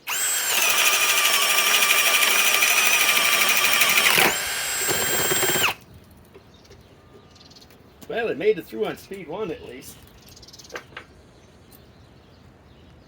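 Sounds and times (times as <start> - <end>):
drill boring into wood: 0.0 - 5.8.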